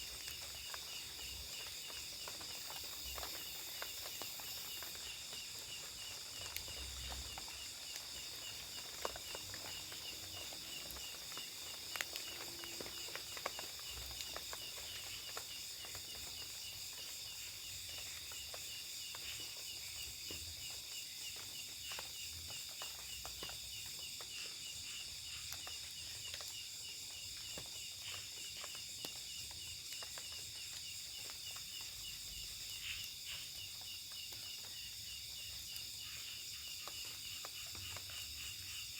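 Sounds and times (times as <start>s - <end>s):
crickets shrilling: 0.0s - 20.8s.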